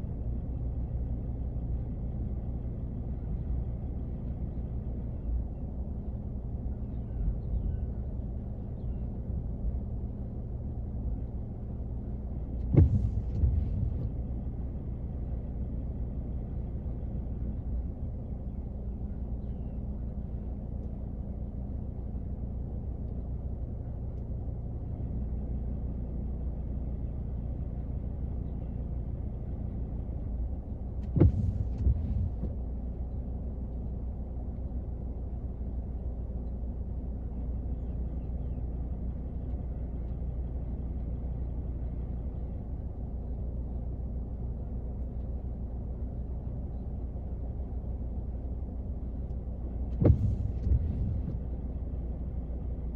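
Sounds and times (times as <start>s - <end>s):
sharp knock: 50.0s - 51.4s.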